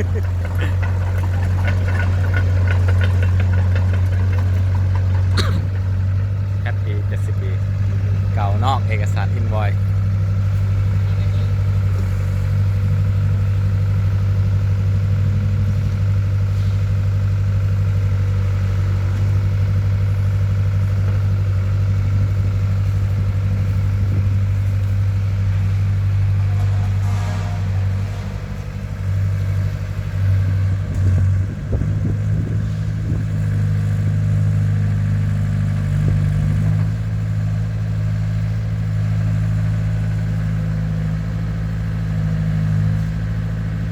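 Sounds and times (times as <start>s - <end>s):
excavator diesel engine running: 0.0s - 43.9s.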